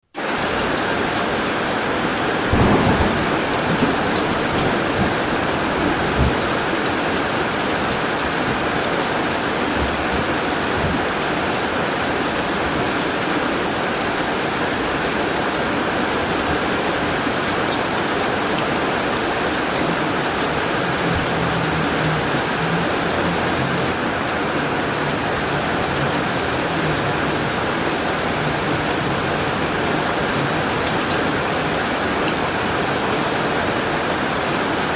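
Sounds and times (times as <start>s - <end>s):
heavy rain on a tin roof: 0.0s - 34.9s
thunderclap: 2.4s - 8.7s
low thunder rumbles: 2.4s - 11.2s, 14.3s - 33.4s.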